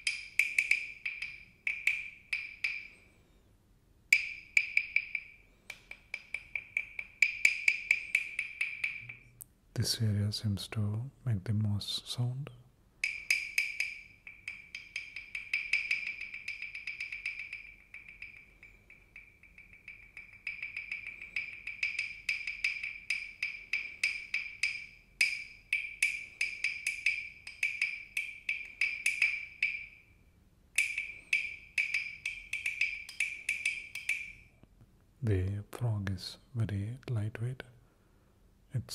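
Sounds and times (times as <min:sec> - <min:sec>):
wooden frog guiro clicks: 0:00.0 - 0:02.9, 0:04.1 - 0:09.5, 0:13.0 - 0:29.9, 0:30.8 - 0:34.8.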